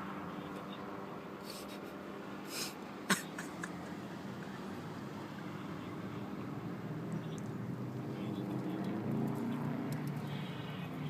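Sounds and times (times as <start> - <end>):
car idling hum: 3.1 - 11.0.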